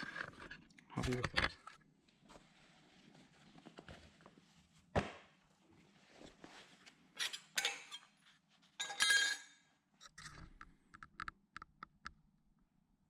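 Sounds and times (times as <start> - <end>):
metal clinking clatter: 8.8 - 9.5.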